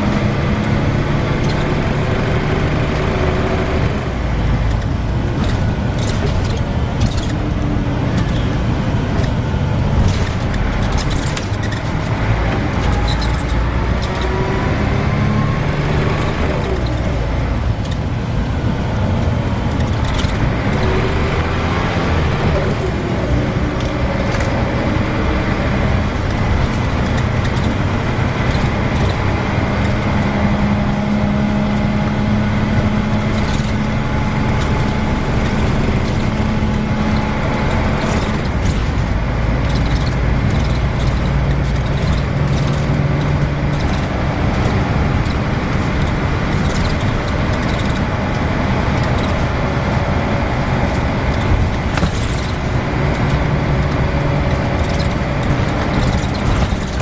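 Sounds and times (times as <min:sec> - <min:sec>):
bus engine and road drone: 0:00.0 - 0:57.0
gearbox whine: 0:00.0 - 0:57.0
rattles and clicks: 0:00.0 - 0:57.0.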